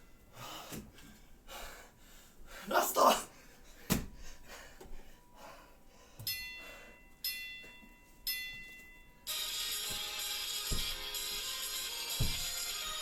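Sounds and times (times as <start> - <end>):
bell-like chime tones: 6.3 - 12.4
electronic dance music: 9.3 - 13.0
thump: 12.2 - 12.5.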